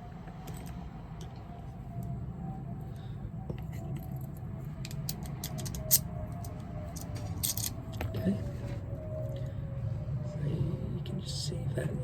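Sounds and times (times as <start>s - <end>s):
low hum: 0.0s - 12.0s
padlock parts clicking: 4.8s - 8.0s.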